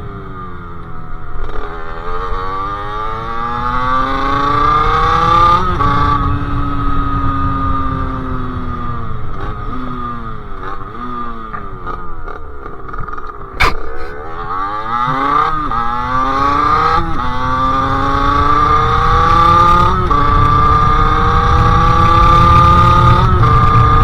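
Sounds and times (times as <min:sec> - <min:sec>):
two-stroke motorcycle engine revving: 0:00.0 - 0:24.0
exhaust crack: 0:08.8 - 0:24.0.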